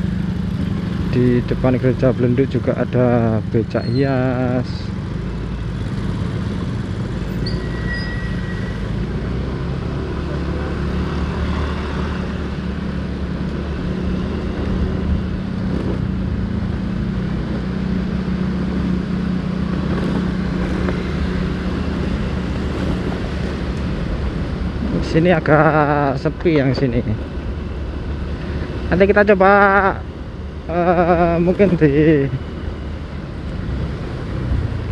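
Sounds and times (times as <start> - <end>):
road and wind noise: 0.0 - 34.9.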